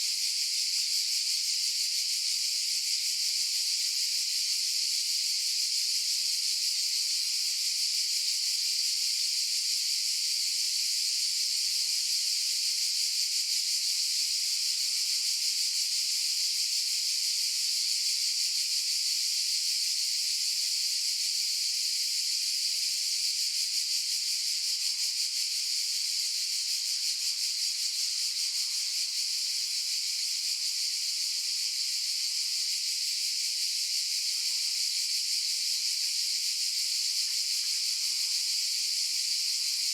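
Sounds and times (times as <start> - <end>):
cicadas buzzing: 26.2 - 39.9.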